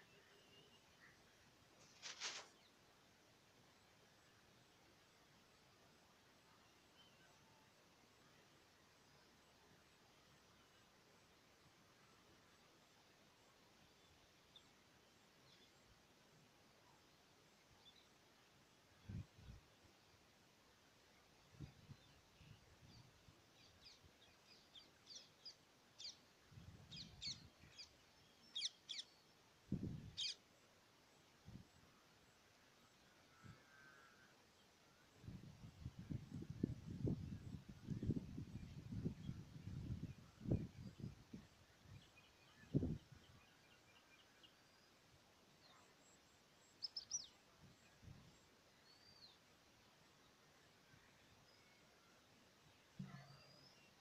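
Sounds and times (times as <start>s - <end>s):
bird chirping: 45.6s - 49.4s.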